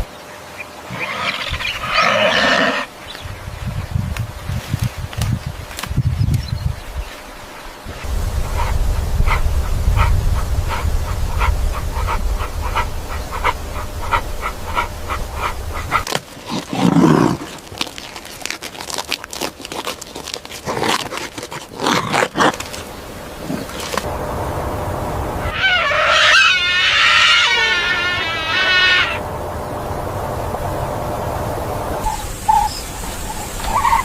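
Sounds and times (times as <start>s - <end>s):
low rumble: 7.9s - 16.0s, 24.0s - 34.0s
dog pulsing sounds: 8.0s - 16.1s.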